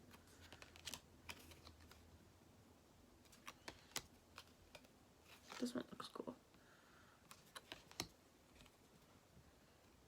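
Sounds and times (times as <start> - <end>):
trading cards clicking and tapping: 7.3 - 8.2.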